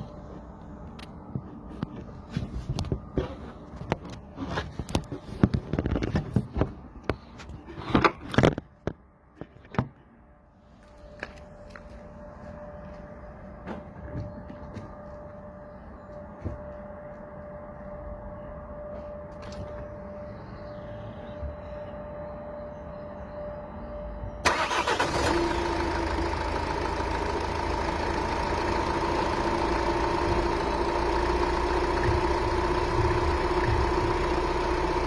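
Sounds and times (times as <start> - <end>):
diesel engine idling: 24.4 - 35.0.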